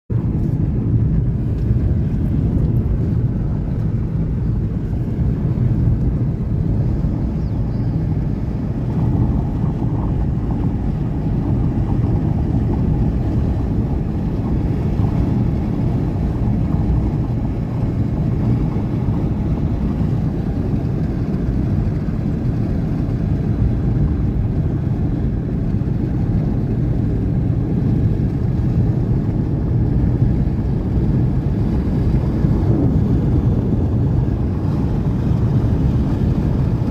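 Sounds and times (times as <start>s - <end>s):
jet engines rumbling: 0.1s - 36.9s
wind buffeting microphone: 0.1s - 36.9s.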